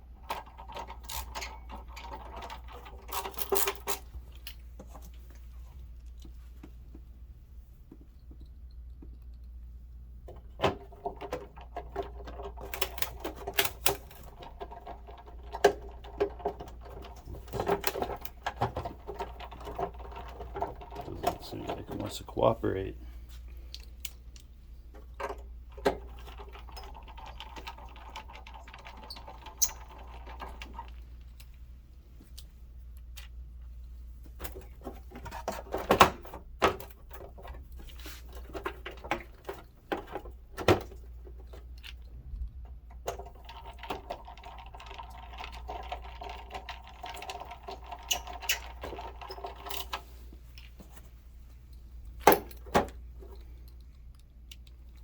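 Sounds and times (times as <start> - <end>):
tools and parts clattering: 0.2 - 5.2, 10.3 - 22.6, 34.4 - 42.1, 43.0 - 54.7.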